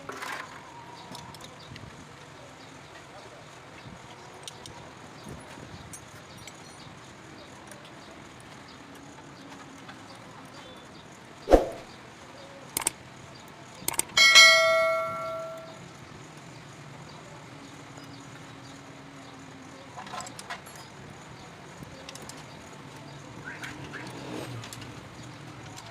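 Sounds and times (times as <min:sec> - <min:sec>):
metal object ringing when struck: 0:14.2 - 0:15.8.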